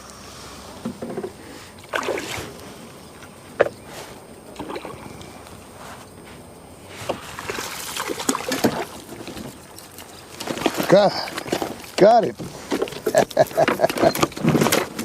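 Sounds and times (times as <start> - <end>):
water sloshing: 1.7 - 5.4, 7.0 - 15.0
clicks and splashing: 1.8 - 2.6, 7.4 - 15.0.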